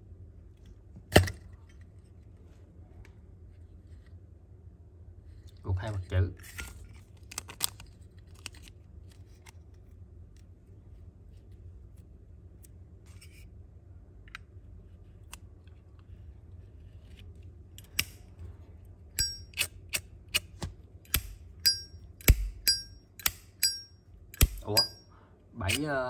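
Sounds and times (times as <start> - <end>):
metal lighters clinking: 19.2 - 25.0.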